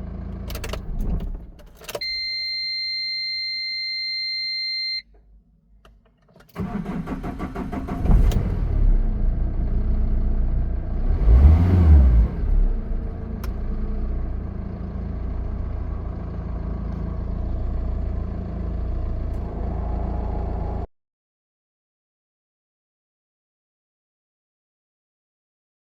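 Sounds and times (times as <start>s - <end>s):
car engine starting and idling: 0.0s - 2.6s, 5.7s - 20.9s.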